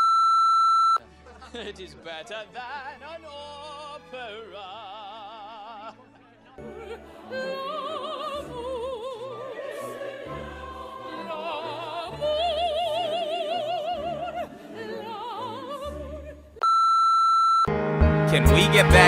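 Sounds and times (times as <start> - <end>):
orchestral accompaniment: 17.7 - 19.0
high operatic voice singing: 18.3 - 19.0.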